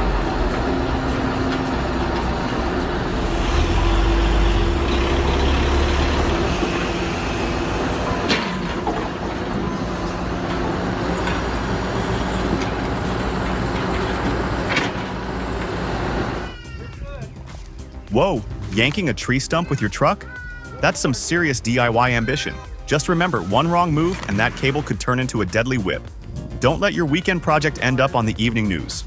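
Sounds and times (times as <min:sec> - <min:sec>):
diesel engine running under load: 0:00.0 - 0:16.5.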